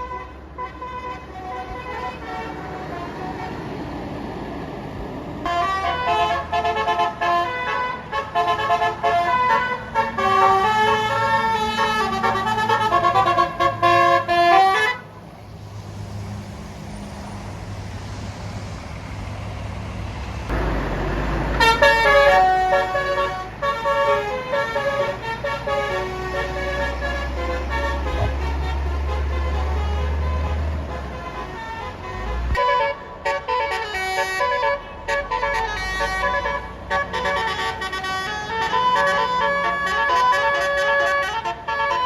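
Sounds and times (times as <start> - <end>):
bus engine rumbling low: 0.0 - 42.0
multi-trumpet air horn tune: 5.5 - 15.1, 21.5 - 42.0.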